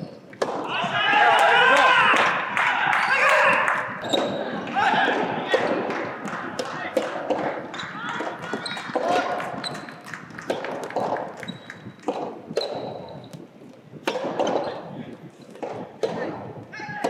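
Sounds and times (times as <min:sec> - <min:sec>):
ball bouncing on indoor court: 0:00.0 - 0:17.0
murmur of voices: 0:00.6 - 0:11.4
rubber ball struck by rackets: 0:05.0 - 0:17.0.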